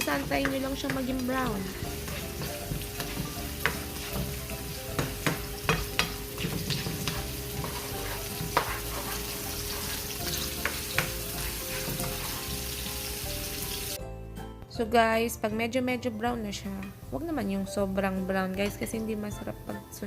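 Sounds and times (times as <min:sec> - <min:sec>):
food sizzling in oil: 0:00.0 - 0:14.0.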